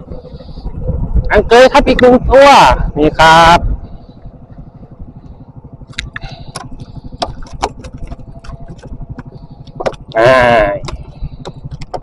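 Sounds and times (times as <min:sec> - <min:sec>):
engine running with low pulse: 0:00.0 - 0:12.0
sharp clicks and knocks: 0:05.9 - 0:12.0.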